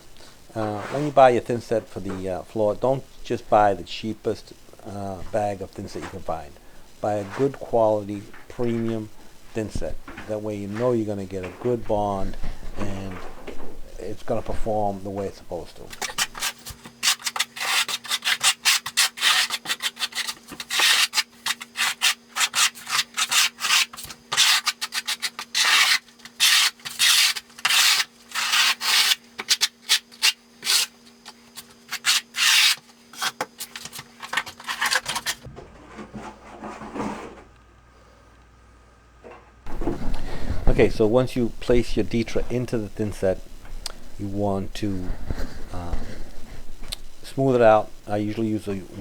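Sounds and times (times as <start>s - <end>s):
steady low hum: 0.0s - 49.0s
trowel scraping thinset: 0.6s - 1.2s, 16.0s - 37.4s.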